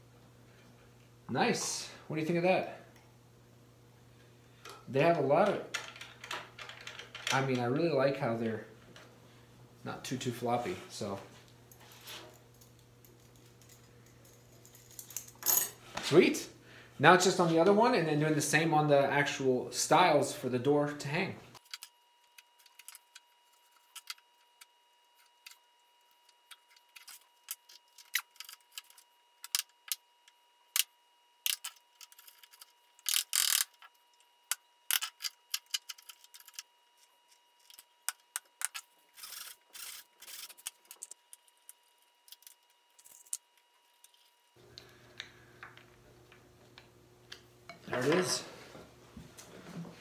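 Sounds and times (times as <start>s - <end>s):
screwdriver scraping turns: 34.9s - 43.4s.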